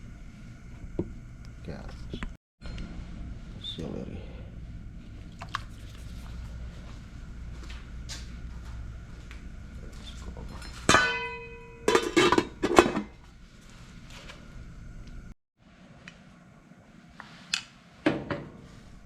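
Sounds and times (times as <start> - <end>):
steady low hum: 0.0 - 19.0
metal cookware clanging: 10.6 - 13.2.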